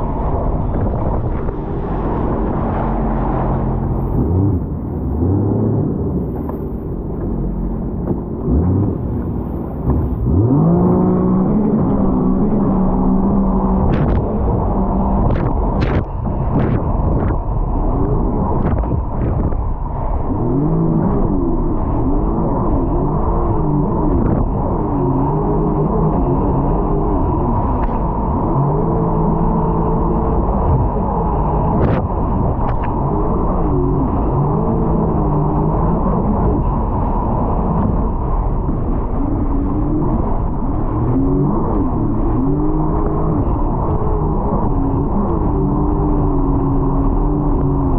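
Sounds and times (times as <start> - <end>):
loud rushing noise: 0.0 - 11.4
jet ski engine revving: 0.0 - 47.9
wind and water rumble: 0.0 - 47.9.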